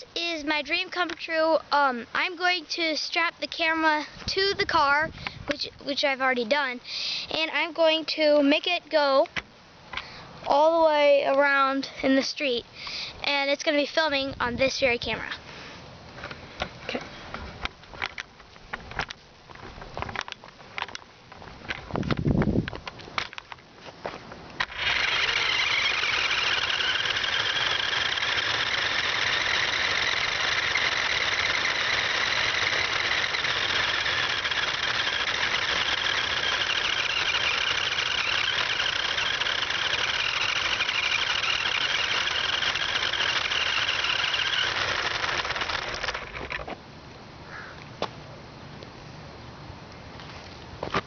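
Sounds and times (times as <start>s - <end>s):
toy car motor whine: 24.6s - 46.7s.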